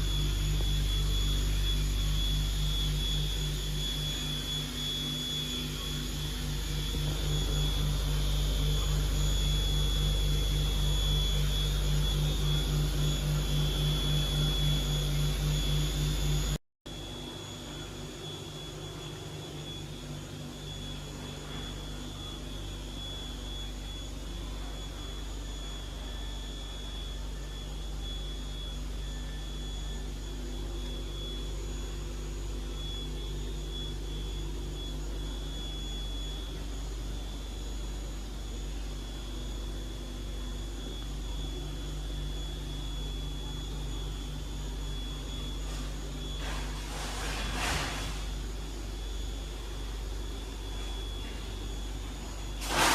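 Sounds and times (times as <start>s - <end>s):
lathe humming with high whine: 0.0s - 52.9s.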